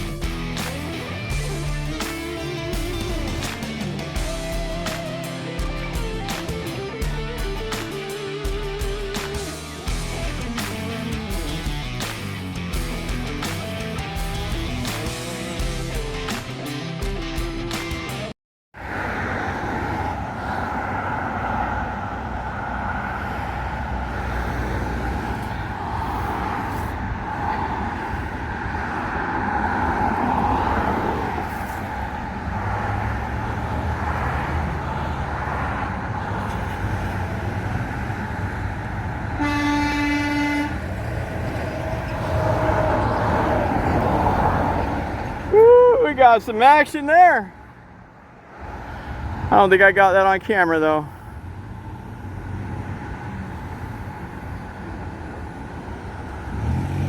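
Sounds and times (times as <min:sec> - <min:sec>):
moving vehicle running noise: 0:00.0 - 0:46.0, 0:47.5 - 0:50.3, 0:51.1 - 0:57.0
vehicle horn: 0:39.4 - 0:41.0.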